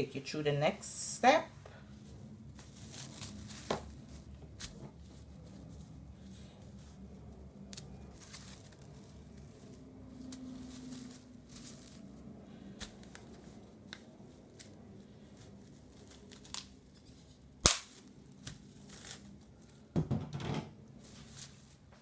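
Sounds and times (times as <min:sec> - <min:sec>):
loud sharp snap: 0:17.6 - 0:17.9.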